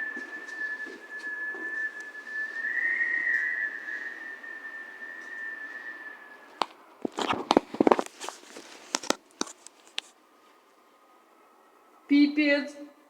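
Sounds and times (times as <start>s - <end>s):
door whistling in wind: 0.0s - 7.9s.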